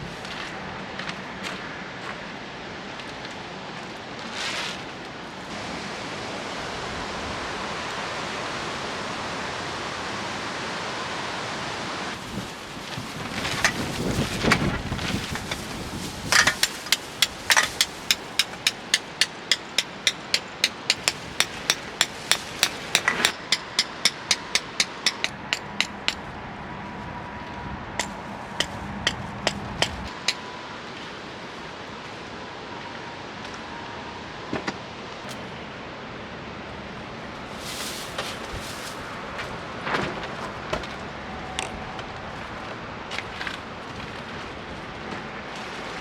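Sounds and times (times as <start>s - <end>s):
hammer striking metal tent peg: 16.4s - 26.2s, 28.0s - 30.4s.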